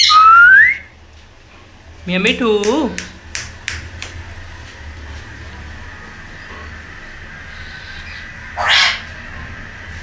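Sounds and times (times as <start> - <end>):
parrot screech: 0.0 - 0.8, 7.6 - 9.1.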